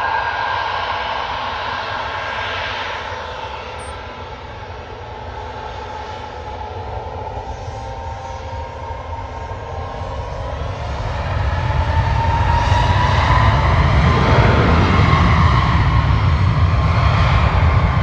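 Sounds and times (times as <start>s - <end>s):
jet engine roar with whine: 0.0s - 18.0s.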